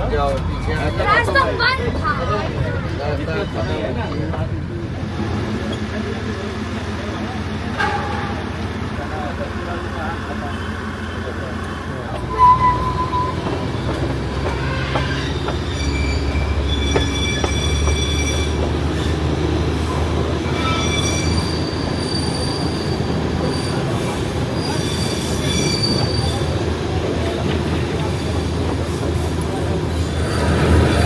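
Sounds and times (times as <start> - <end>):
train running rumble: 0.0 - 31.0
wheels squealing against rails: 0.2 - 31.0.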